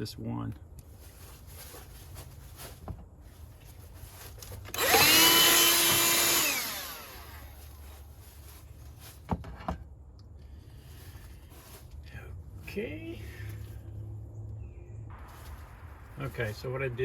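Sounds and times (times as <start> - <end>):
power drill spinning: 4.6 - 7.8.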